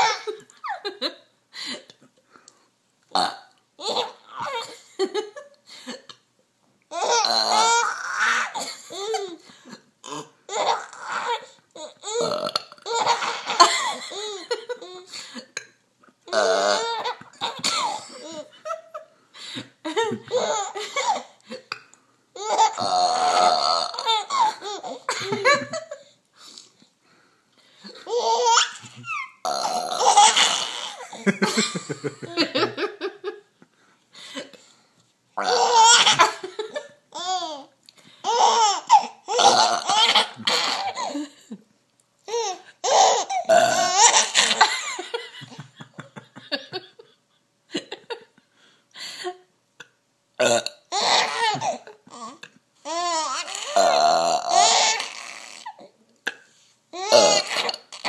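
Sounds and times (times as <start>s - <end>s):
baby laughing: 0.0s - 1.2s, 3.8s - 5.4s, 6.9s - 9.5s, 10.1s - 15.1s, 16.3s - 19.0s, 19.9s - 21.6s, 22.4s - 26.1s, 27.8s - 33.1s, 35.4s - 41.2s, 42.2s - 46.8s, 50.9s - 53.8s, 54.5s - 55.9s
woman burping loudly: 3.2s - 3.6s, 12.1s - 13.7s, 22.8s - 24.2s, 29.4s - 30.8s, 39.3s - 40.9s, 43.5s - 44.8s, 50.4s - 52.0s, 53.6s - 55.6s.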